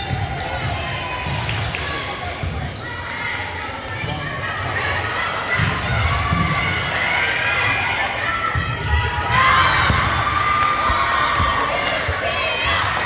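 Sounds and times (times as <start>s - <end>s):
crowd shouting and cheering: 0.0s - 13.0s
basketball bouncing on court: 8.6s - 10.2s.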